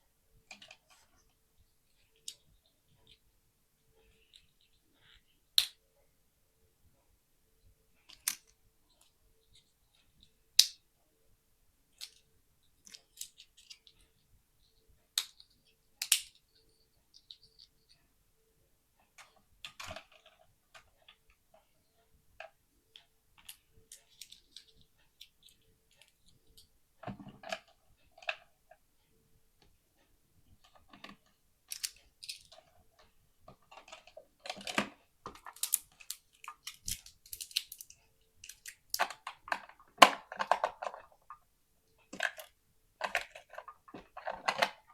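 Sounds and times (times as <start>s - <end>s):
plastic clicks and snaps: 4.2s - 5.8s, 8.0s - 9.2s, 10.0s - 10.8s, 12.0s - 14.1s, 15.1s - 16.5s, 30.6s - 41.4s, 42.0s - 44.9s.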